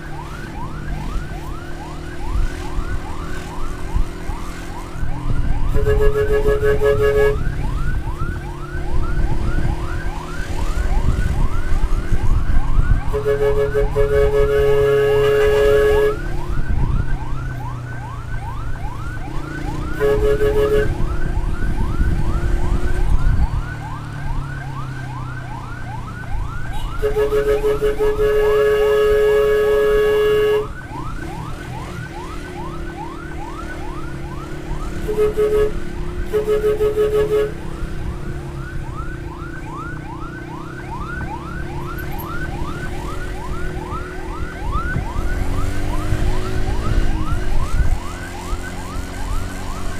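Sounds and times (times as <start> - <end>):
electronic siren yelping: 0.0 - 49.9
horn blasts: 5.4 - 7.8, 13.0 - 16.6, 19.7 - 22.1, 26.7 - 30.8, 34.8 - 37.9.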